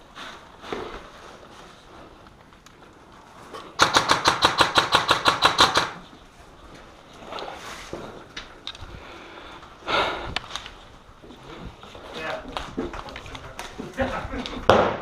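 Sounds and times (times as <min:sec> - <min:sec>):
airsoft gun rapid firing: 0:03.8 - 0:06.0.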